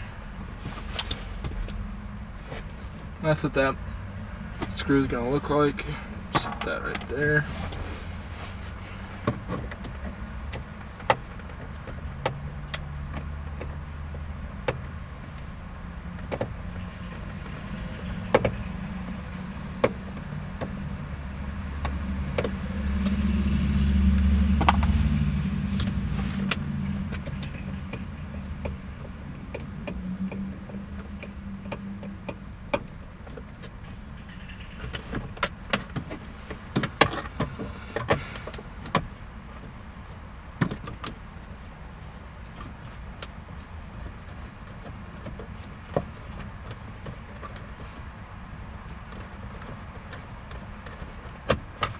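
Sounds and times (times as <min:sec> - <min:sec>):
low vehicle rumble: 0:00.0 - 0:51.9
hand tools clicking and tapping: 0:25.8 - 0:33.8, 0:34.8 - 0:41.4, 0:42.5 - 0:51.9.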